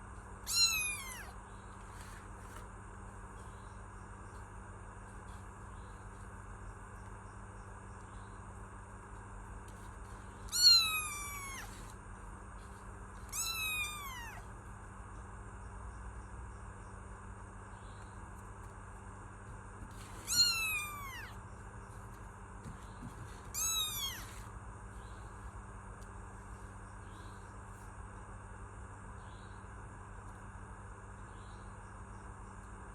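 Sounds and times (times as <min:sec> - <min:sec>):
kitten meowing: 0:00.4 - 0:01.4, 0:10.5 - 0:11.9, 0:13.3 - 0:14.5, 0:20.1 - 0:21.4, 0:23.5 - 0:24.4.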